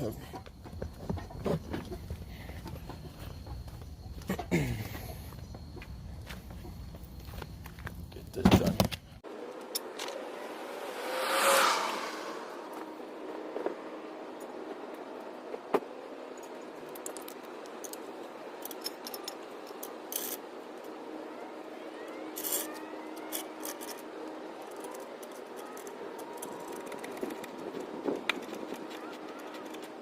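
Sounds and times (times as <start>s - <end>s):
parts and tools handled: 16.4s - 20.4s.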